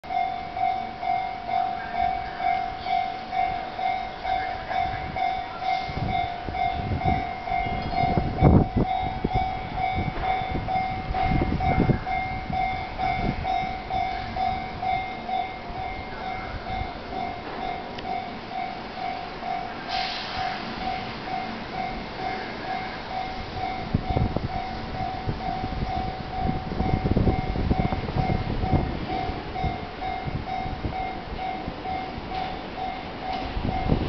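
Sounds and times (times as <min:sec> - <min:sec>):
level crossing bell ringing: 0:00.1 - 0:19.8
train passing with wheel clacks: 0:00.1 - 0:34.0.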